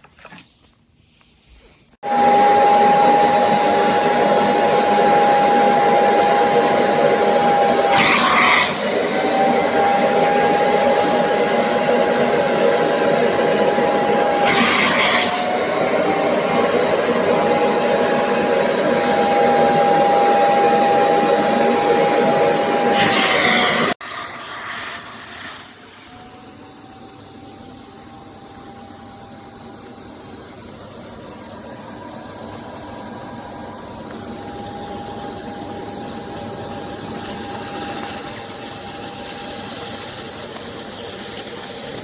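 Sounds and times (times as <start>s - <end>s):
suction motor whining: 2.1s - 27.0s.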